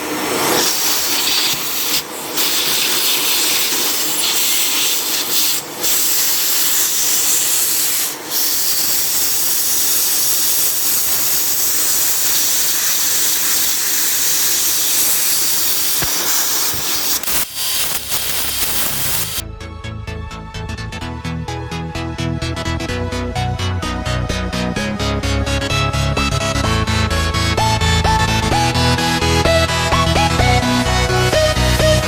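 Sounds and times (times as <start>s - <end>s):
vacuum cleaner running: 0.0s - 19.4s.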